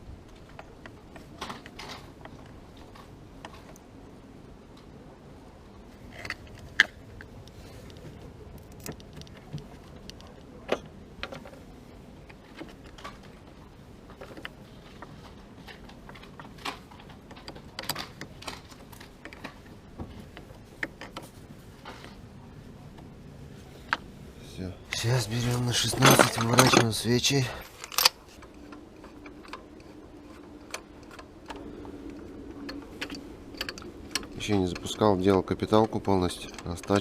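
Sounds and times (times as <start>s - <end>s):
low background hum: 0.0s - 37.0s
metal tools clinking: 24.9s - 31.2s.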